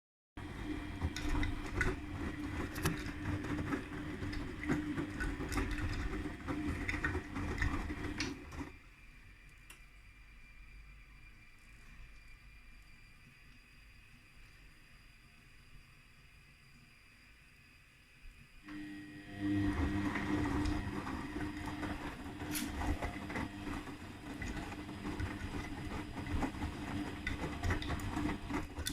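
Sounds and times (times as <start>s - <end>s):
washing machine running: 0.4s - 9.2s, 18.6s - 28.9s.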